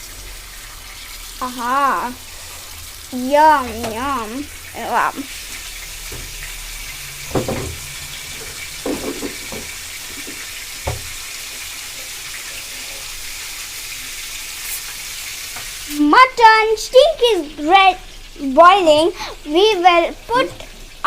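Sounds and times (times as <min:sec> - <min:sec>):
meat sizzling in a pan: 0:00.0 - 0:21.0
faint knocks: 0:07.3 - 0:11.2.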